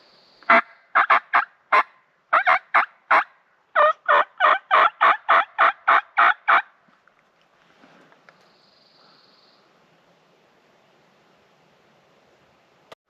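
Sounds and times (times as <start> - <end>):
turkey yelping: 0.5 - 6.7.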